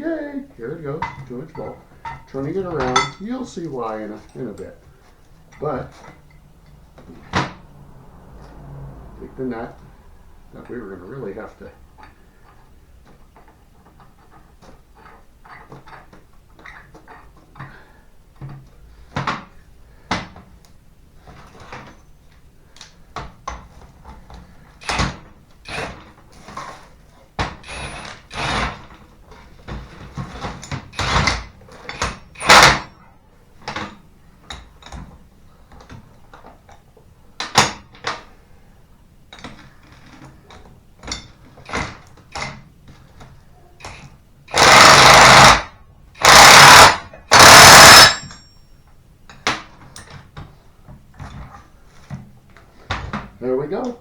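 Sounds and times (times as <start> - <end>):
metal tools clanking: 0.8 - 7.7, 46.2 - 50.2
impact wrench hammering: 27.5 - 28.8, 31.0 - 32.9, 44.5 - 48.4.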